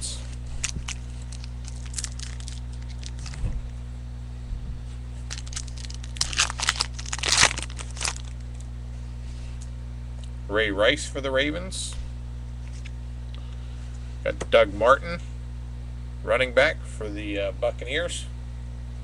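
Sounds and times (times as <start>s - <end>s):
steady low hum: 0.0s - 19.0s
card pack wrapper crinkling: 0.5s - 3.4s, 5.3s - 8.7s.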